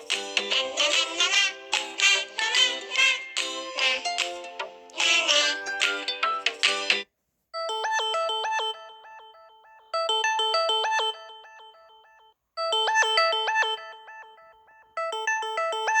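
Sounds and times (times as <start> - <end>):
mobile phone ringtone: 7.6 - 16.0.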